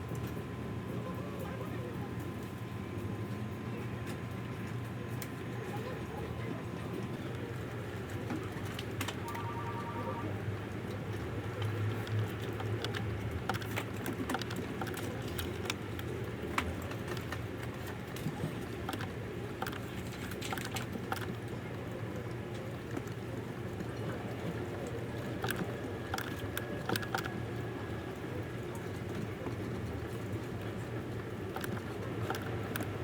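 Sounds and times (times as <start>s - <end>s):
light clicks and taps: 10.9s - 27.4s, 28.8s - 33.0s.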